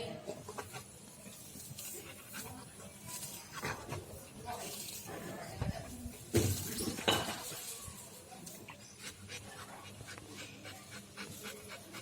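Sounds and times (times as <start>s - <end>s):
puppy panting: 8.9s - 12.0s.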